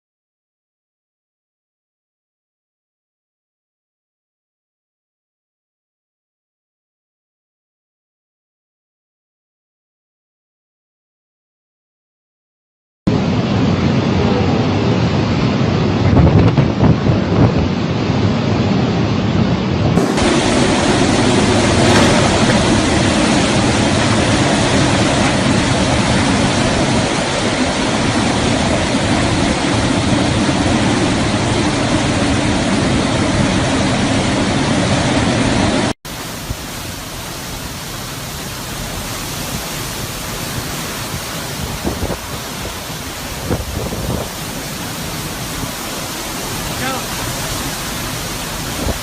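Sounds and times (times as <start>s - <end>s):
hurricane wind: 13.1s - 49.0s
rain: 13.1s - 49.0s.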